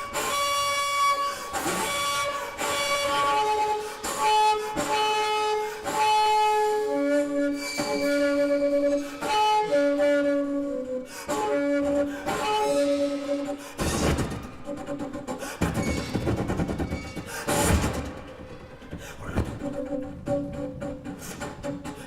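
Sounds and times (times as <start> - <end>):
bass flute held notes: 0.0 - 14.0.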